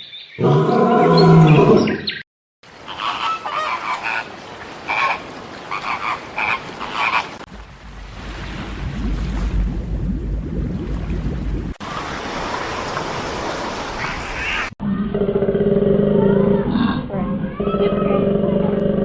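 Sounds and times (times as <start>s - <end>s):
short croaking calls: 2.8s - 7.4s
deep drawn-out animal call: 14.4s - 19.0s.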